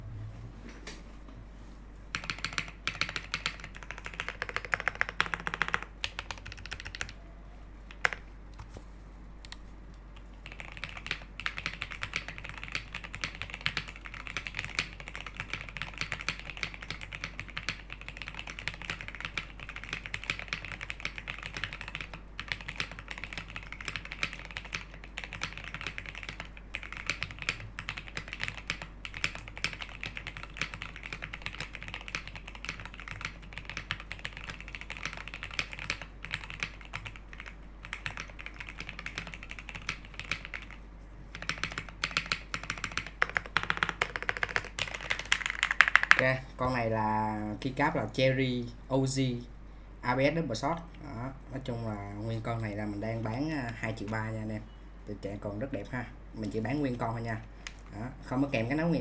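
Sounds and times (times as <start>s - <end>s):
mechanical keyboard typing: 2.1s - 7.2s, 7.9s - 8.7s, 10.4s - 46.4s.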